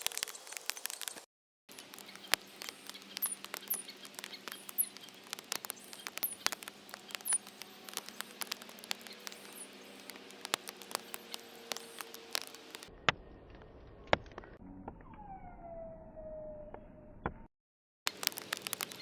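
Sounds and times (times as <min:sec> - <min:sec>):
birds pecking clicks and taps: 0:00.1 - 0:12.9, 0:18.1 - 0:19.0
high falling bird chirps: 0:01.8 - 0:12.9, 0:15.0 - 0:17.2.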